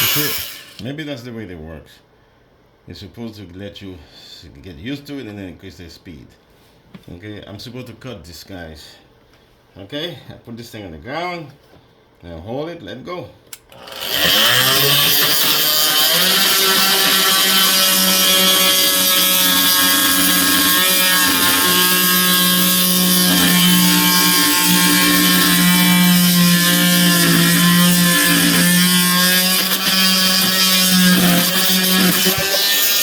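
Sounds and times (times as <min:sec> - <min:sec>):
oscillating multi-tool buzzing: 0:00.0 - 0:00.8, 0:13.8 - 0:33.0.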